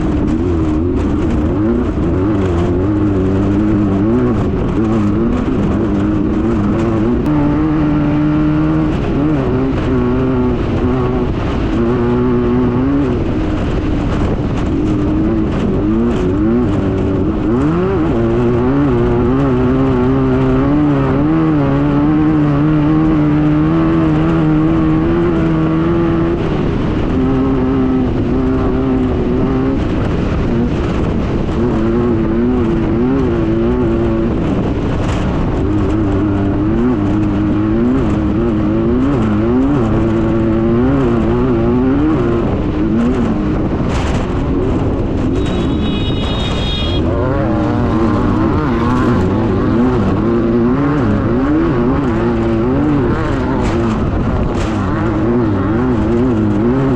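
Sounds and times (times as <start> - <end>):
buggy engine running hard: 0.0 - 56.9
car rattling over rough ground: 0.0 - 56.9.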